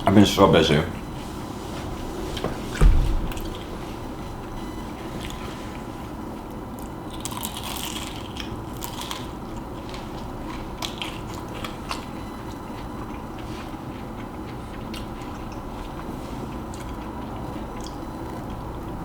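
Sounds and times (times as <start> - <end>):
crisp chewing crunches: 6.8 - 18.9.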